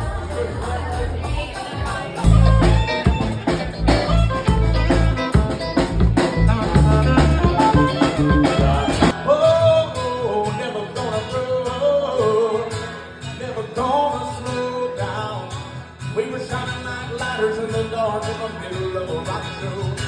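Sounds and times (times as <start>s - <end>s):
bass: 0.0s - 10.2s
drums: 0.0s - 10.2s
person singing: 0.0s - 15.2s
guitar: 0.0s - 20.0s.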